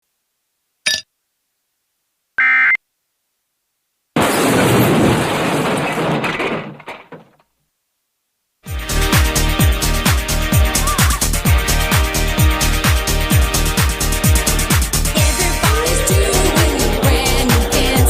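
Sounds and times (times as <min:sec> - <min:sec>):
loud crash: 0:04.2 - 0:07.3
buzzing electronic tone: 0:15.2 - 0:18.0.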